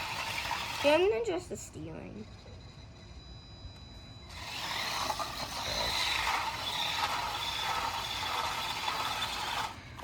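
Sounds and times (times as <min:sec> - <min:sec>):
toy car motor whirring: 0:00.0 - 0:01.1, 0:04.3 - 0:10.0.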